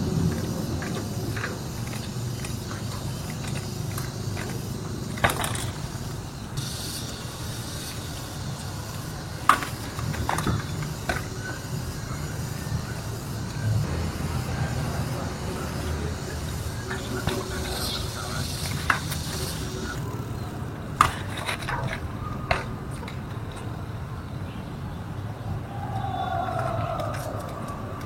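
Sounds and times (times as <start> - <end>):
bike landing and hitting obstacles: 0.0 - 13.7, 16.0 - 23.7.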